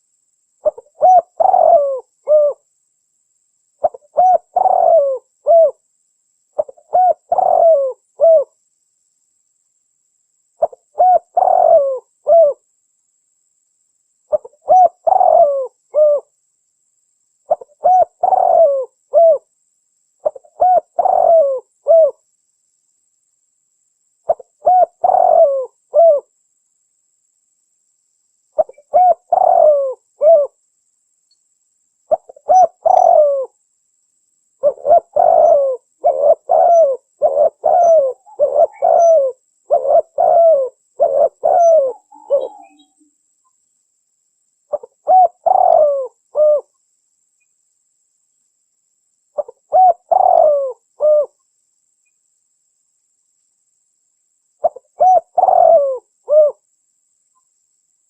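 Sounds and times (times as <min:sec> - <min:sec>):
dove cooing: 0:00.6 - 0:02.6, 0:03.8 - 0:05.8, 0:06.6 - 0:08.5, 0:10.6 - 0:12.6, 0:14.3 - 0:16.3, 0:17.5 - 0:19.5, 0:20.2 - 0:22.2, 0:24.3 - 0:26.3, 0:28.6 - 0:30.6, 0:32.1 - 0:33.6, 0:34.6 - 0:43.1, 0:44.7 - 0:46.7, 0:49.4 - 0:51.4, 0:54.6 - 0:56.6.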